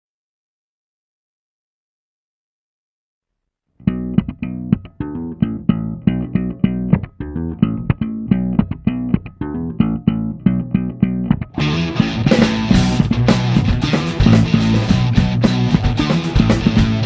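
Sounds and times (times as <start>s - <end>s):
rock guitar and bass riff: 3.8s - 17.0s.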